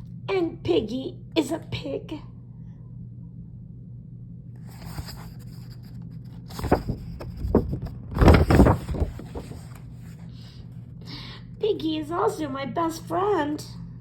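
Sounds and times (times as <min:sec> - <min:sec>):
steady low hum: 0:00.0 - 0:14.0
paper pages rustling: 0:04.7 - 0:10.3.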